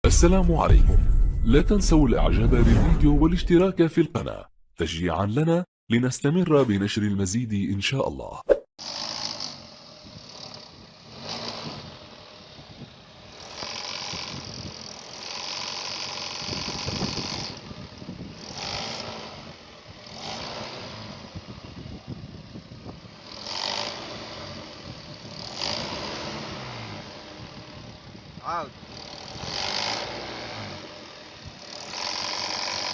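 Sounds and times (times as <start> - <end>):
car engine rattling: 9.7 - 32.9.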